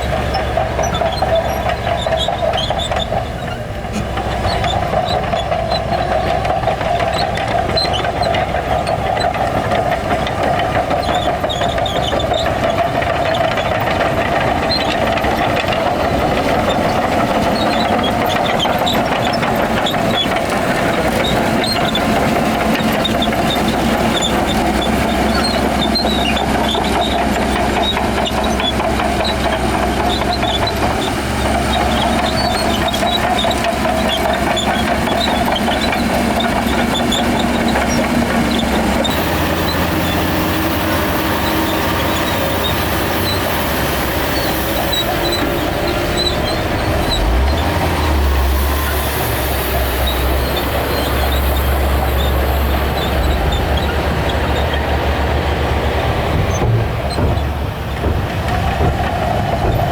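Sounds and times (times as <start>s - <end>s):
diesel engine running under load: 0.0s - 59.9s
short high squeaks: 10.7s - 55.2s.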